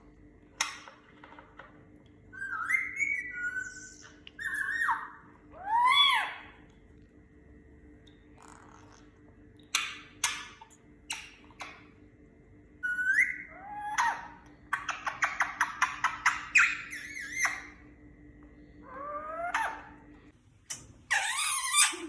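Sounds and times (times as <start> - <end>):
parakeet calling: 2.3 - 6.6, 9.8 - 11.9, 12.8 - 17.8, 18.8 - 20.0, 21.1 - 22.0.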